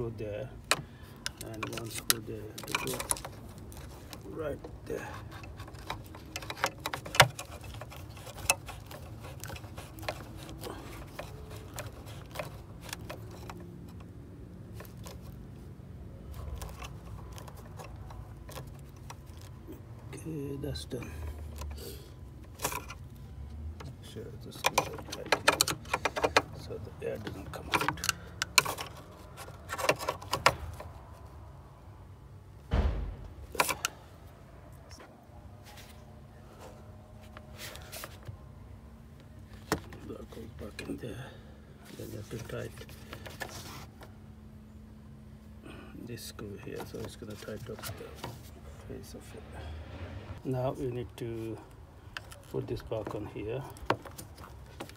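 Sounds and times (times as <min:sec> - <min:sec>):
clicks and knocks of parts: 0:00.6 - 0:15.4, 0:16.3 - 0:19.6, 0:22.4 - 0:31.2, 0:32.7 - 0:34.0, 0:52.1 - 0:54.9
heavy thump: 0:32.7 - 0:33.6.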